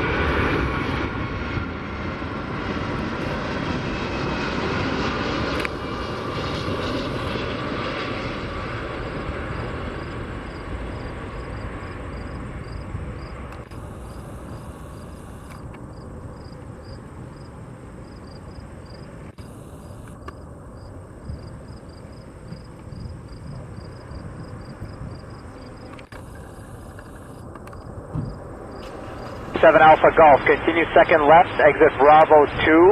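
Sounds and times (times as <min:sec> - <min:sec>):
jet engines rumbling: 0:00.0 - 0:32.9.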